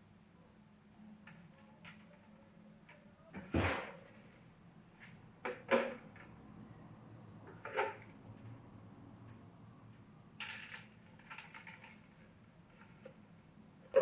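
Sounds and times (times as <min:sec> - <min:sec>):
knocks and clunks of objects: 0:03.4 - 0:04.2, 0:05.4 - 0:06.3.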